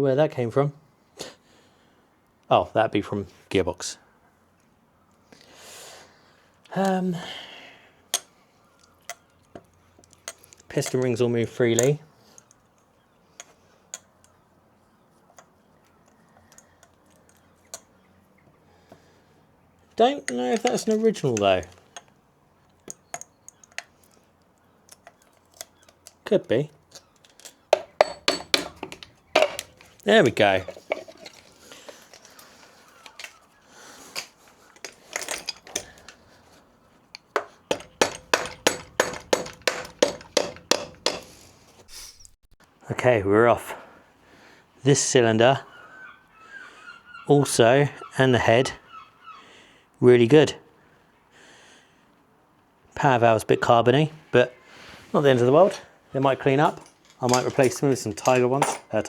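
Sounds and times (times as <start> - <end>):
metal engine parts clicking: 8.1 - 14.4, 19.9 - 36.3, 37.1 - 41.4, 56.5 - 59.0
sharp metallic taps with ringing: 27.8 - 29.8, 37.4 - 41.3.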